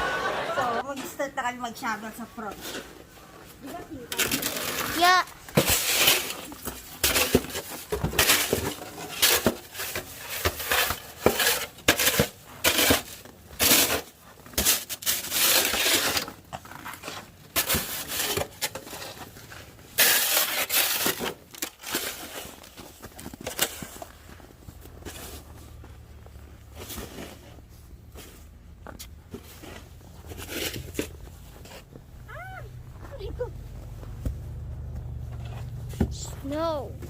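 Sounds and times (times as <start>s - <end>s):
snow shovel scraping snow: 4.0s - 24.4s, 25.0s - 25.6s, 29.3s - 31.9s.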